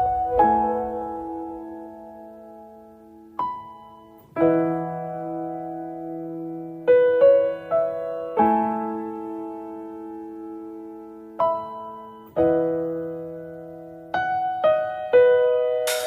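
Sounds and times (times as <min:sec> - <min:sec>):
slow gentle piano music: 0:00.0 - 0:16.0.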